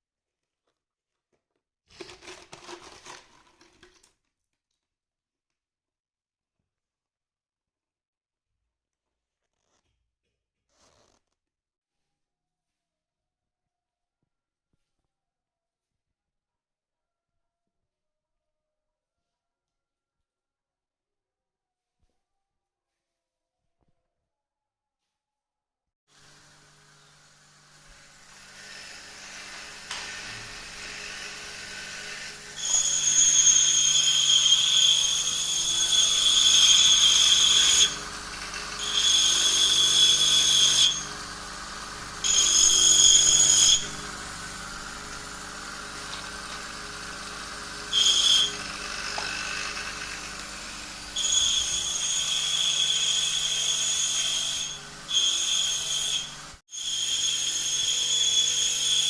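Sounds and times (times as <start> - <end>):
small power tool whining: 26.2 - 59.0.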